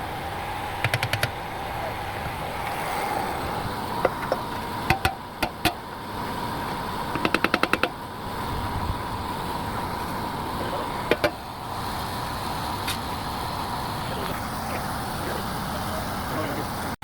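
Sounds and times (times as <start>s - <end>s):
faint high hum: 0.0s - 16.8s
sharp knocks: 0.8s - 1.4s, 4.0s - 5.8s, 7.1s - 8.0s, 11.1s - 11.4s
rattle of strikes: 0.8s - 1.5s, 4.0s - 5.8s, 7.1s - 8.0s, 11.1s - 11.4s.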